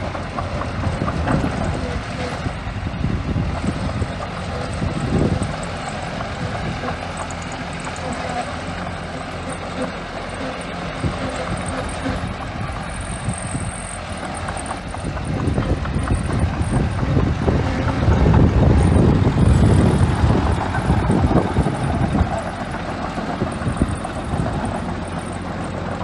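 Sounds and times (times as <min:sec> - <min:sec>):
bulldozer diesel engine running: 0:00.0 - 0:26.0.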